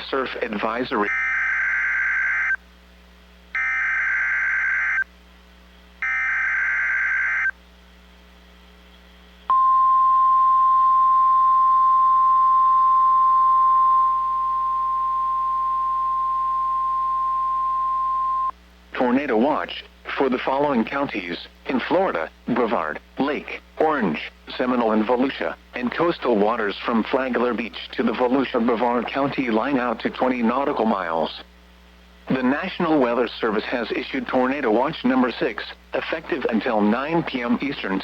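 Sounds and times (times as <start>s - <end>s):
steady warning alarm tone: 1.0s - 2.6s, 3.6s - 5.1s, 6.0s - 7.5s, 9.5s - 18.5s.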